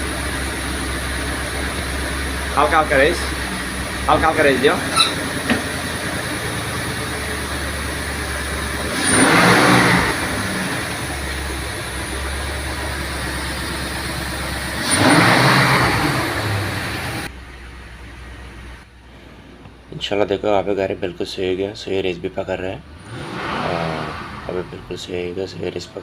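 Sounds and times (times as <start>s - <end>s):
car engine idling and revving: 0.0s - 19.9s, 22.3s - 26.0s.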